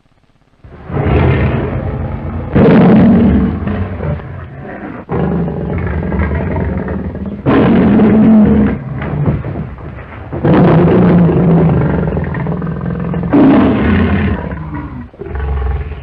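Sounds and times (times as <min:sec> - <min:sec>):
lion roars: 0:00.7 - 0:16.0.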